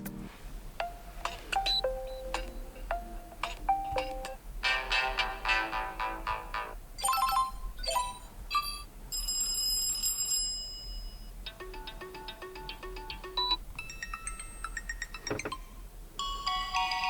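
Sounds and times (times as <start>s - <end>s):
electronic ringtone tune: 1.6s - 4.2s, 7.0s - 10.2s, 11.6s - 17.0s.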